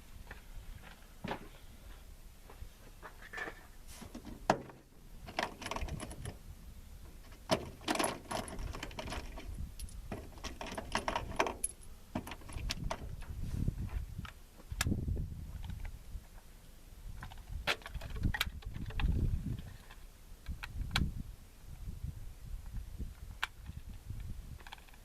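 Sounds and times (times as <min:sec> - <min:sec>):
loose metal items clinking: 0:07.2 - 0:13.1.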